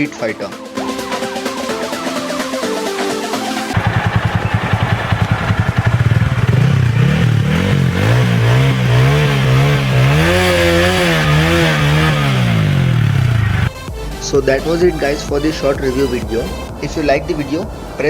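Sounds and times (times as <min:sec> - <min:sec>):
motorcycle engine revving: 0:03.8 - 0:13.7.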